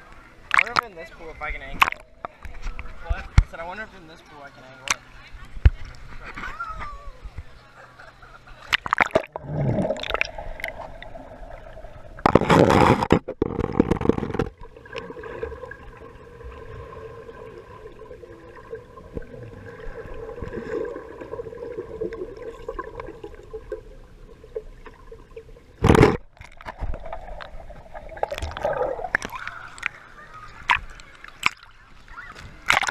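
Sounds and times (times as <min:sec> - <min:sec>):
water splashing: 0:00.4 - 0:01.0, 0:08.6 - 0:32.9
steady hum: 0:05.2 - 0:31.2.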